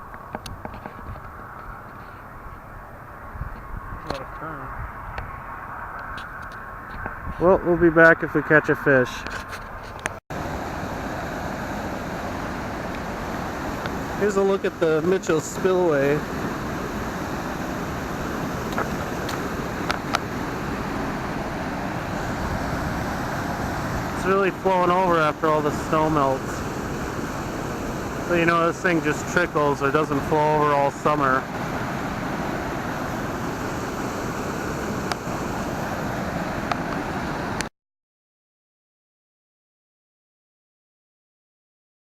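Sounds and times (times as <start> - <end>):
water rushing over spillway: 10.3 - 37.7.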